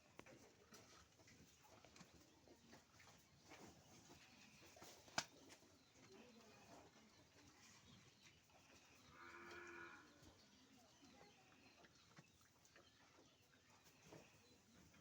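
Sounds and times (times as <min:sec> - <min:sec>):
cow mooing: 0:09.1 - 0:10.1.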